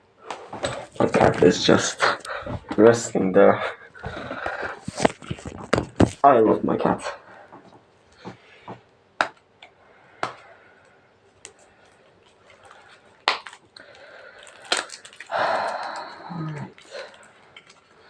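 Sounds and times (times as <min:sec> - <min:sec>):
packaging rustling and crinkling: 0:04.0 - 0:06.3, 0:11.8 - 0:18.0
plastic packaging clicks: 0:12.6 - 0:17.9.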